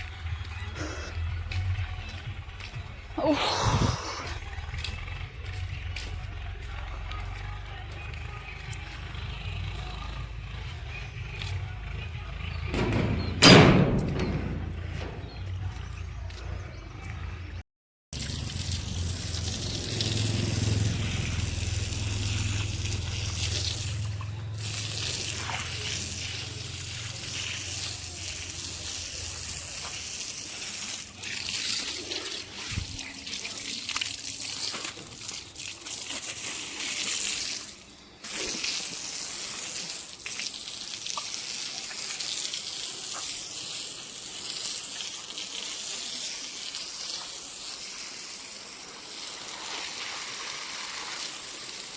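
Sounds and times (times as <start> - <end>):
running water: 18.1 - 51.9
heavy rain: 18.2 - 24.1.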